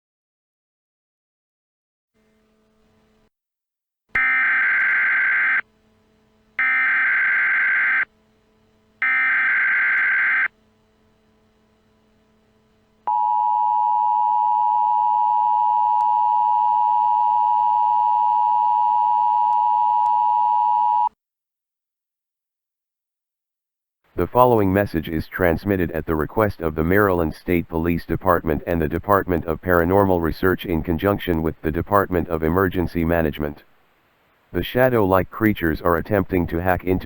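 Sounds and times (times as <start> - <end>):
steady attention tone: 4.2 - 12.5.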